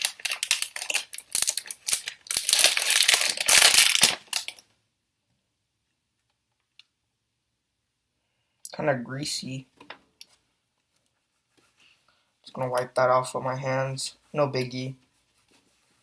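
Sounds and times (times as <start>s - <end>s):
plastic packaging crinkling: 0.0s - 4.6s.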